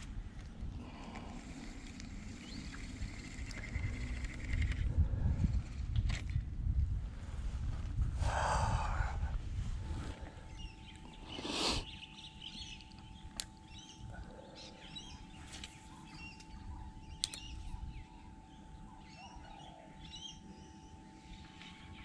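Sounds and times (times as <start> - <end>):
small birds chirping: 10.2 - 22.0.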